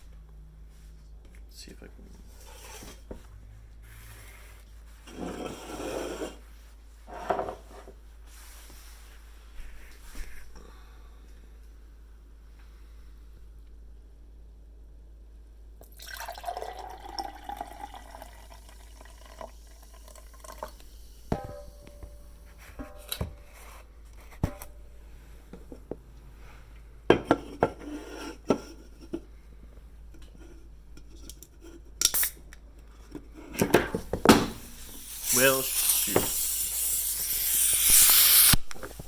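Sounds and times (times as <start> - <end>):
soda pouring into a glass: 15.8 - 21.0.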